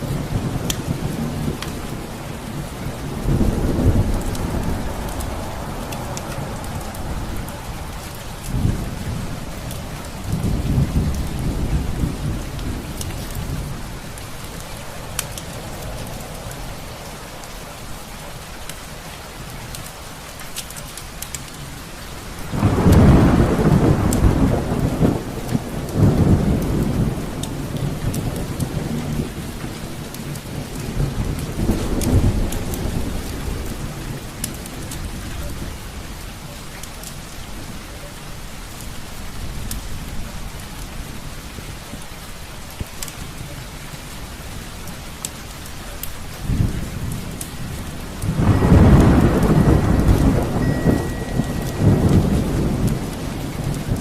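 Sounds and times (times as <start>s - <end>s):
rolling thunder: 0.0s - 17.2s, 22.4s - 36.2s, 46.0s - 54.0s
steady rain: 0.0s - 54.0s.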